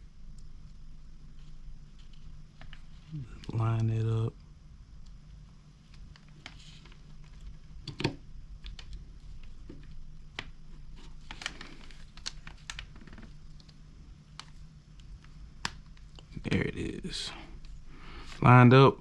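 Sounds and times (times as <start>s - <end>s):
low steady hum: 0.0s - 19.0s
small clicks and taps: 5.9s - 10.6s.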